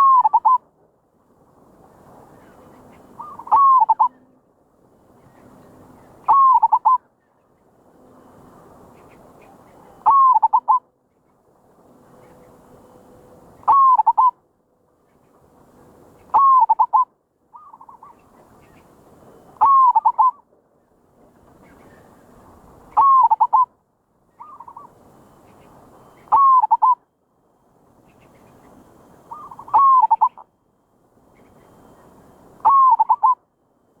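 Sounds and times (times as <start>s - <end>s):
dove cooing: 0.0s - 0.6s, 3.1s - 4.2s, 6.3s - 7.0s, 9.8s - 10.8s, 13.6s - 14.4s, 16.3s - 18.2s, 19.6s - 20.4s, 22.9s - 23.7s, 24.4s - 24.9s, 26.2s - 27.0s, 29.2s - 30.4s, 32.6s - 33.4s.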